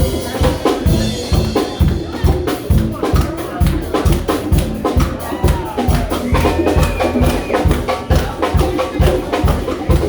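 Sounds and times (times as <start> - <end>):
live band music: 0.0 - 10.0
steady drum beat: 0.0 - 10.0
held high instrument tone: 5.4 - 8.0.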